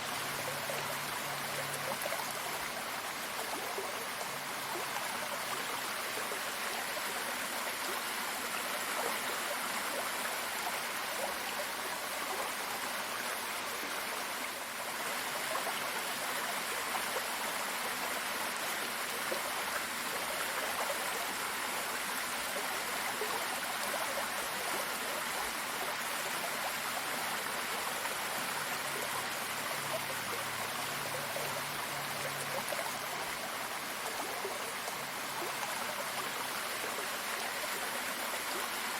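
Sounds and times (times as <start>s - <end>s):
stream water rushing and splashing: 0.0s - 38.9s.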